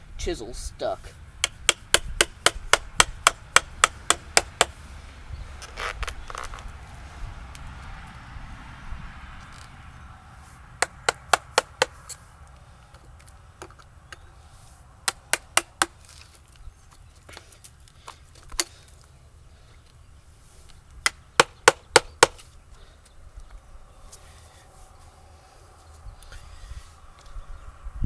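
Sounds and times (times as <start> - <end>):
mallet striking chisel into wood: 1.4 - 4.8, 10.8 - 12.0, 15.1 - 16.0, 21.1 - 22.4.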